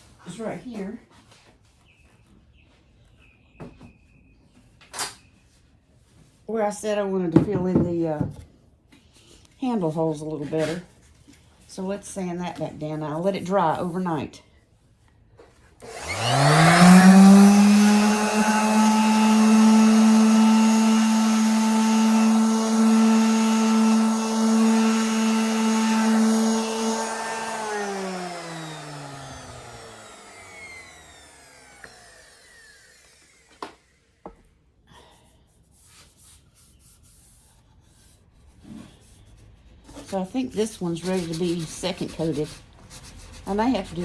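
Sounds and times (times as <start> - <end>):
orbital sander whining: 15.8 - 34.2, 43.4 - 44.0.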